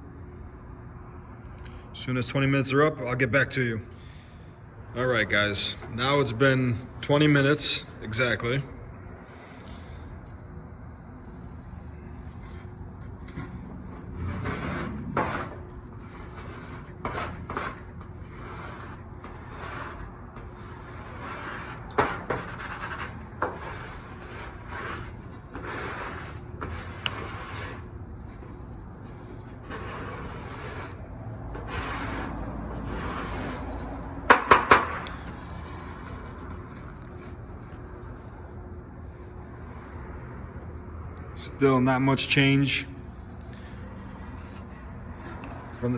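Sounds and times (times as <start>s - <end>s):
plastic spreader scraping metal: 12.3s - 38.3s, 43.4s - 45.9s.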